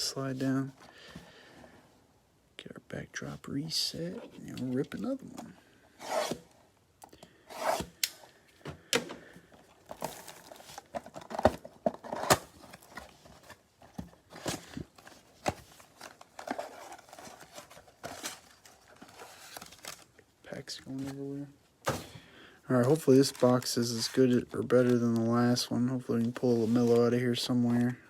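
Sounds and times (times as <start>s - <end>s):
packaging tearing and rustling: 9.8s - 13.6s, 14.3s - 20.2s.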